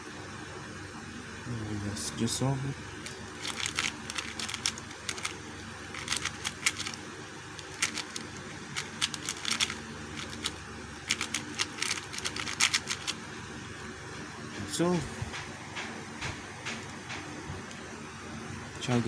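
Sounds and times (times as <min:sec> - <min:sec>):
puzzle cube plastic clacking: 0:03.0 - 0:07.0, 0:07.6 - 0:13.2.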